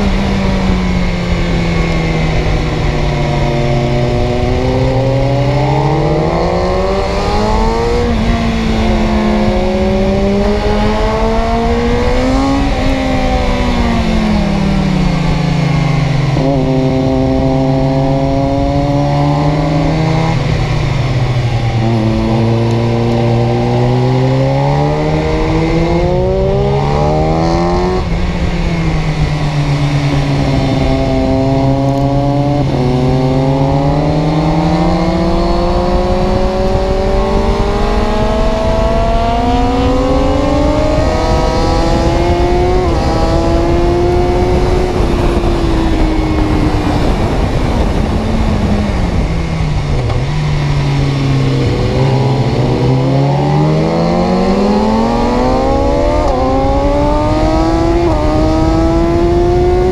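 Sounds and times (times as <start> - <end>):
vehicle engine revving: 0.0 - 59.9.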